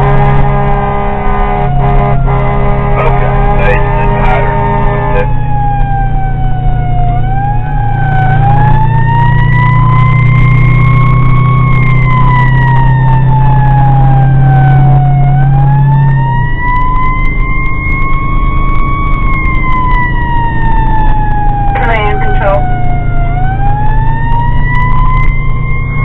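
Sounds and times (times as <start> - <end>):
fire engine siren wailing: 0.0 - 26.0
steady low drone: 0.0 - 26.0.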